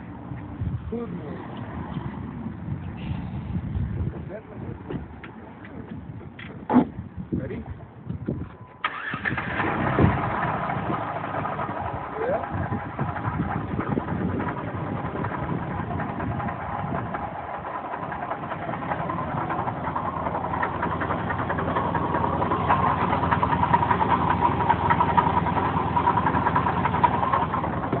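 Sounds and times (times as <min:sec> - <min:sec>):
engine running with rapid knock: 0:08.9 - 0:28.0.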